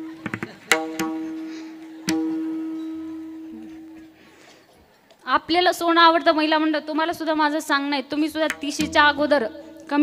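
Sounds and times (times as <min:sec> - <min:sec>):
tuned hand drum ringing: 0:00.0 - 0:04.2, 0:08.4 - 0:10.0.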